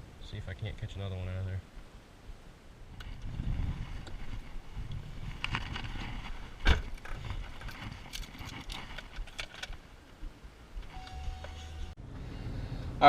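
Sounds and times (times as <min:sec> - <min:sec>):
low wind rumble: 0:00.0 - 0:13.0
fishing tackle clicking and rattling: 0:07.0 - 0:09.8.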